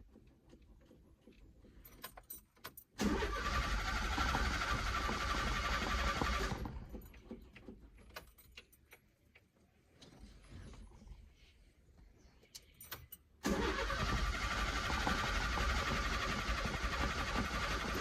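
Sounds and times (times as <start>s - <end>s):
starter motor cranking engine: 3.0s - 7.8s, 13.4s - 18.0s.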